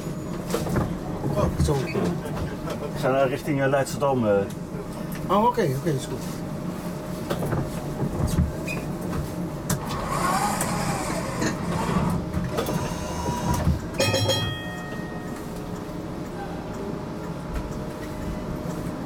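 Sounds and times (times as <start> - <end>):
tram running: 0.0 - 5.3, 6.0 - 19.0
tram bell ringing: 14.0 - 15.6.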